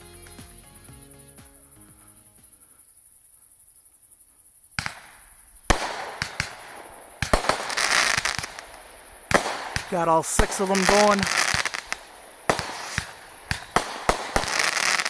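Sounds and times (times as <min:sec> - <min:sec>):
firework shots cracking: 0:04.7 - 0:15.0
firework spraying hiss: 0:04.7 - 0:15.0.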